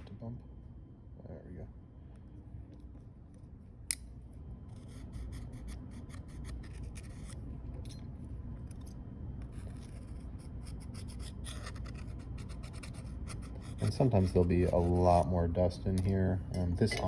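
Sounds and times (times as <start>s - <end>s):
hand tool scratching phone frame: 4.7s - 7.4s, 9.4s - 15.3s.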